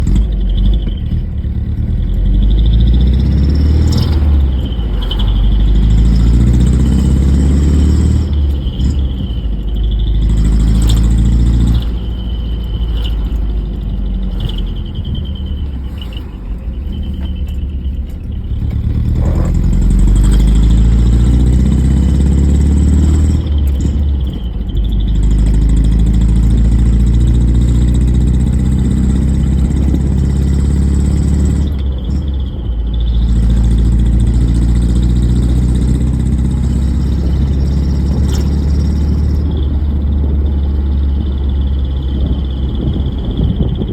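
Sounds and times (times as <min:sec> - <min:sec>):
single-cylinder engine revving: 0:00.0 - 0:43.9.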